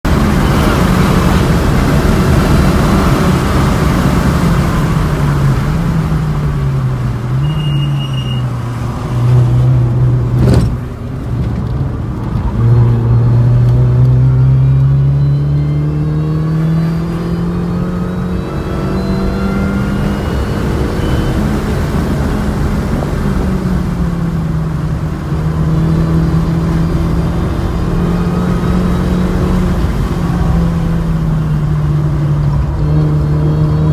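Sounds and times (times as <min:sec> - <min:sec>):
car engine revving hard: 0:12.5 - 0:33.9.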